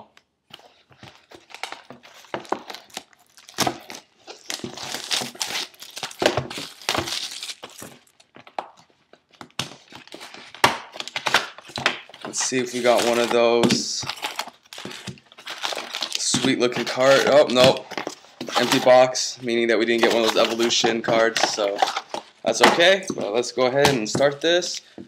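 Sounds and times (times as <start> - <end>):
packaging crinkling and crackling: 0.5 - 19.2.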